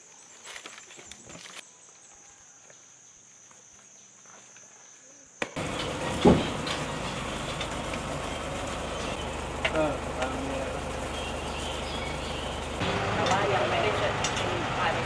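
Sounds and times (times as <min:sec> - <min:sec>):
strong thump: 0:06.2 - 0:06.6.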